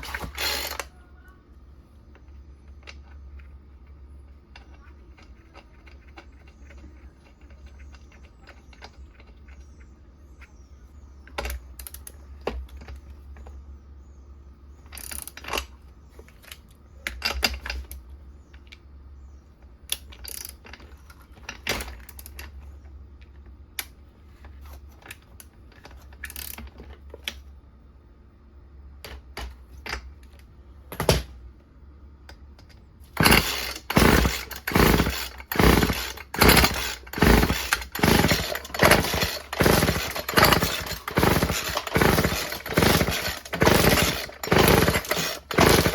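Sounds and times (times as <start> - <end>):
recoil starter pulls cranking engine: 0.0 - 0.9, 33.1 - 45.9
handling clicks and knocks: 29.0 - 31.6, 32.2 - 45.9.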